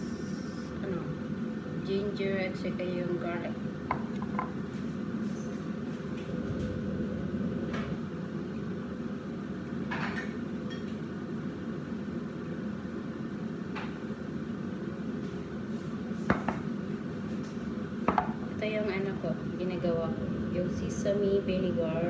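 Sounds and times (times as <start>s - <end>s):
kitchen appliance humming: 6.1s - 8.9s, 19.4s - 22.0s.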